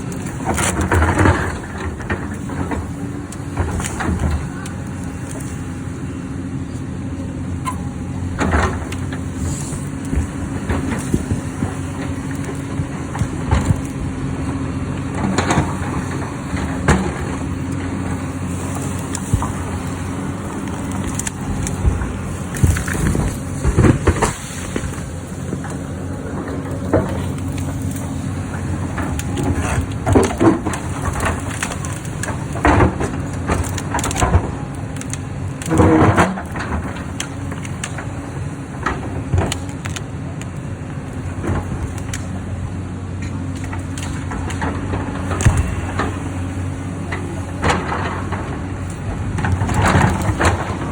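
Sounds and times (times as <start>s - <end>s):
excavator diesel engine running: 0.0s - 50.9s
bucket clunking and scraping rock: 15.2s - 34.5s, 35.6s - 37.5s, 47.0s - 50.9s.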